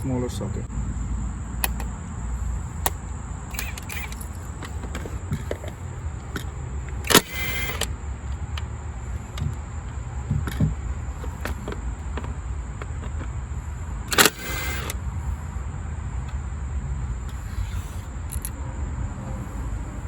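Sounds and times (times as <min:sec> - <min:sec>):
steady low rumble: 0:00.0 - 0:20.0
rattling burst: 0:06.3 - 0:07.9, 0:14.1 - 0:15.1.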